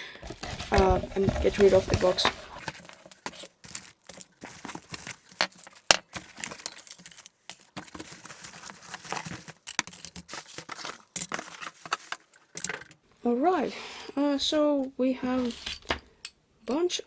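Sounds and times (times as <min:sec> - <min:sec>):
packaging rustling: 0:02.6 - 0:13.0
small plastic pieces clattering: 0:02.6 - 0:13.0.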